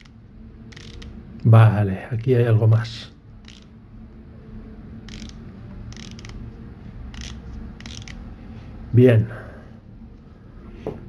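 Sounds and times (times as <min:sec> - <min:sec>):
watch bezel clicking: 0:00.0 - 0:01.2, 0:03.4 - 0:03.7, 0:05.1 - 0:06.4, 0:07.1 - 0:08.3
faint low background noise: 0:00.0 - 0:11.0.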